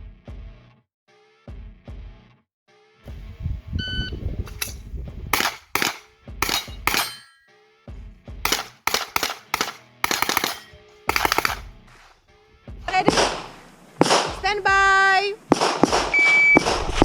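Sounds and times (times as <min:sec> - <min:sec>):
carbine firing rapid shots: 0:05.4 - 0:07.3, 0:08.5 - 0:12.1, 0:14.0 - 0:14.4, 0:15.5 - 0:16.8
shot timer beep: 0:16.1 - 0:16.7.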